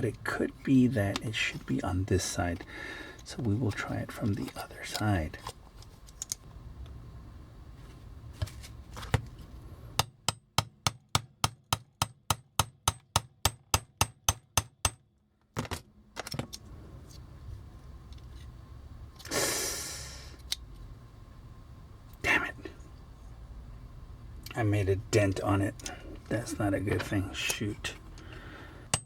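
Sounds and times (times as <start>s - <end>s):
small hammer tapping: 10.0s - 15.0s
scraping hiss: 19.2s - 20.4s.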